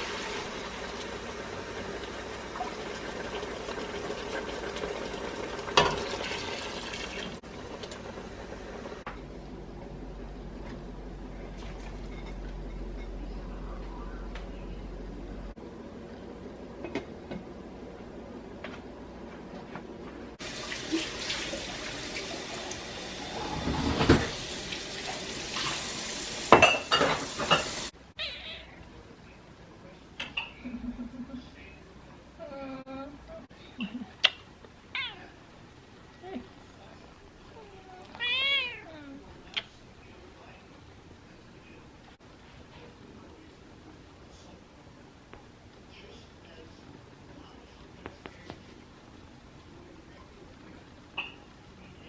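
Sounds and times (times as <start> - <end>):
water running: 0.0 - 9.1, 20.4 - 28.0
dishes clinking in sink: 5.7 - 6.4, 11.6 - 13.4, 23.3 - 24.4, 26.5 - 27.9, 51.2 - 51.5.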